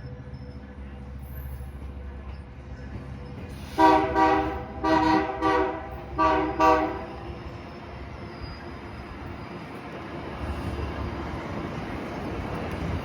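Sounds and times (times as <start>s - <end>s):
train rumble: 0.0s - 13.0s
train horn blasts: 3.7s - 7.2s.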